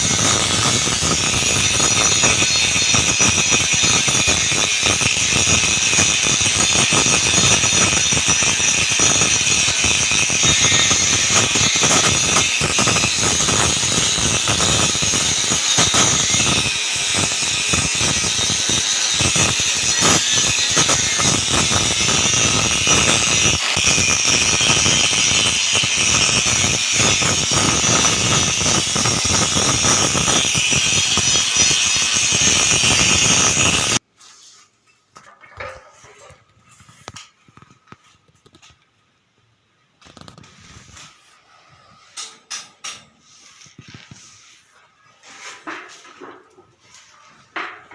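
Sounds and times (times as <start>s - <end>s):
welding arc crackling: 0.0s - 34.0s.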